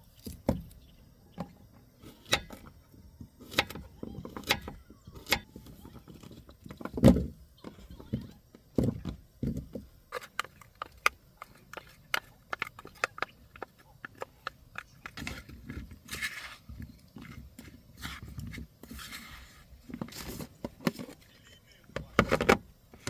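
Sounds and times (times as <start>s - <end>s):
rustling: 7.7s - 23.0s.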